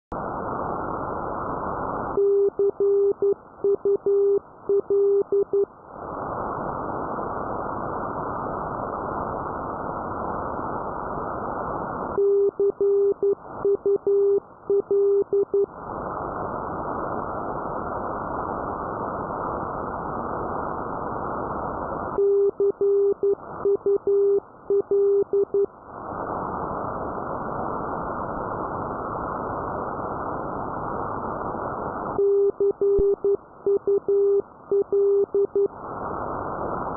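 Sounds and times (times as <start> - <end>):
radio static hiss: 0.1 - 36.9
morse code beeps: 2.2 - 5.7, 12.2 - 15.7, 22.2 - 25.7, 32.2 - 35.7.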